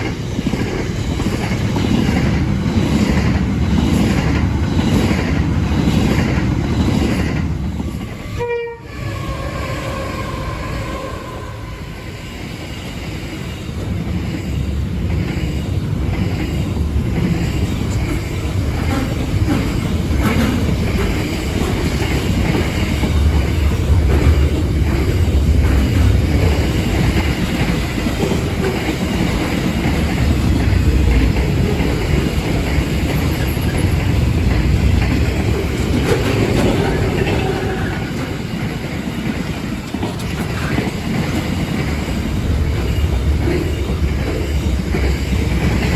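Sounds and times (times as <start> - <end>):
freight train rumbling past: 0.0 - 45.9
wagon wheels clattering over rail joints: 17.1 - 45.9.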